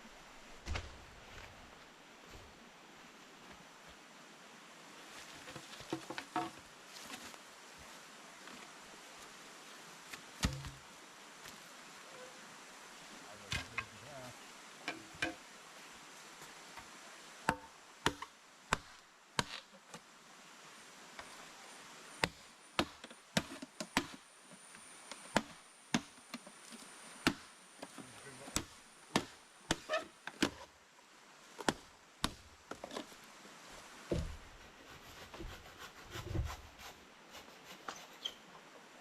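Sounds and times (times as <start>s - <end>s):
blade chopping on wood: 10.4s - 10.8s, 17.5s - 19.6s, 22.2s - 24.2s, 27.2s - 27.5s, 28.5s - 30.7s, 31.6s - 32.5s.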